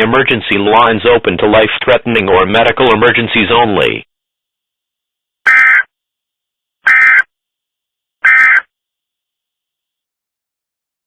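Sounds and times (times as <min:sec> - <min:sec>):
digital data tone bursts: 0:05.5 - 0:05.9, 0:06.9 - 0:07.2, 0:08.3 - 0:08.6.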